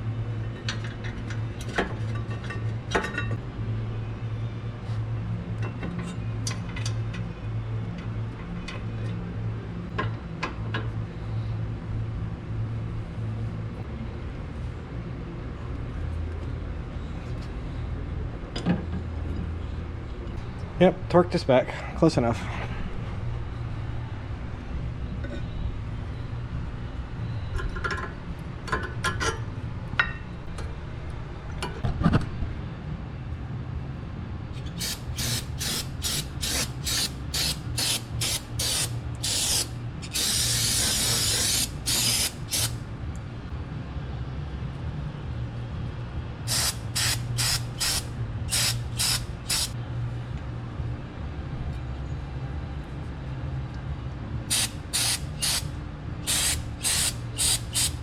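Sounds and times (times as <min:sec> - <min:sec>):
steady low hum: 0:00.0 - 0:58.0
aerosol spray hissing: 0:34.7 - 0:42.8, 0:46.5 - 0:49.8, 0:54.5 - 0:55.7, 0:56.3 - 0:58.0.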